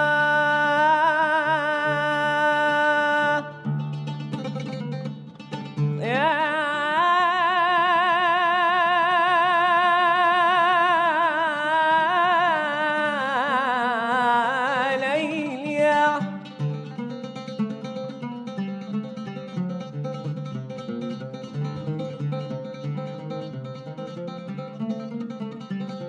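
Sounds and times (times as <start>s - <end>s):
man singing a long vibrato note: 0.0s - 3.8s, 6.0s - 16.6s
plucked guitar notes: 3.6s - 6.2s.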